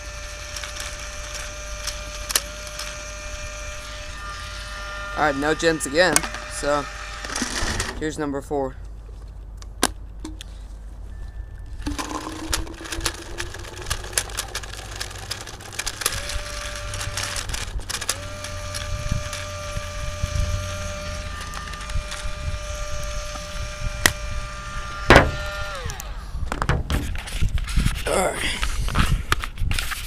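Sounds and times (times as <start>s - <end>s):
motor whining: 0.0s - 8.0s, 11.8s - 26.5s
rubber balls clicking and rattling: 11.8s - 18.3s
loud knock: 25.1s - 25.4s.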